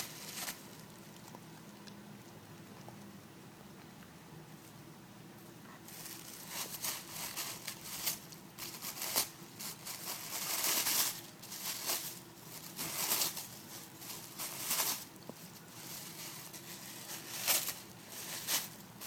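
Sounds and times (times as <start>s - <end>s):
wrapping paper crinkling and tearing: 0.0s - 1.0s, 5.9s - 19.0s.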